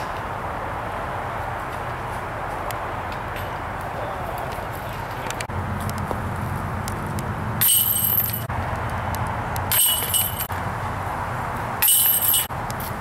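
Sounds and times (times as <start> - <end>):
metal chains jingling: 7.6 - 8.5, 9.7 - 10.5, 11.8 - 12.5.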